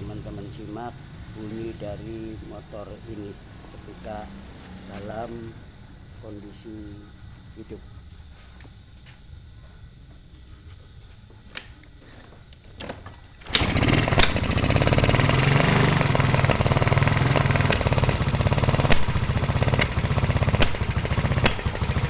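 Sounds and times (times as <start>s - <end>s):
scooter engine starting and running: 2.9s - 5.5s, 13.4s - 22.0s
engine pops: 13.4s - 22.0s.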